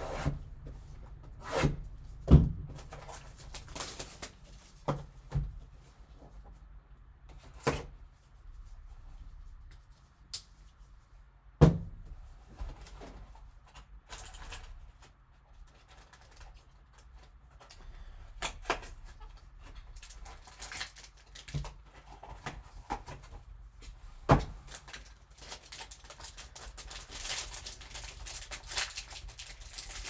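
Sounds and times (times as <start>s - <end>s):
wrapper rustling: 2.9s - 4.8s, 20.0s - 21.5s, 24.6s - 30.0s.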